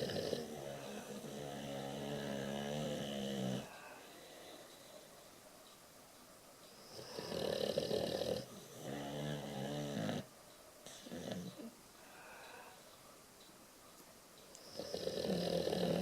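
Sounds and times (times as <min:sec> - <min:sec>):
dog snoring: 0:00.0 - 0:04.6, 0:06.8 - 0:10.3, 0:10.9 - 0:11.7, 0:14.6 - 0:16.0.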